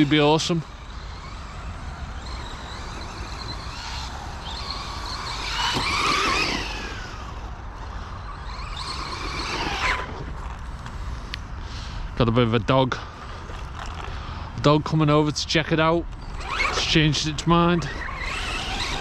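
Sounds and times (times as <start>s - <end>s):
tyre noise: 0.0s - 11.0s, 16.1s - 19.0s
rc car motor whine: 0.0s - 12.1s, 15.0s - 19.0s.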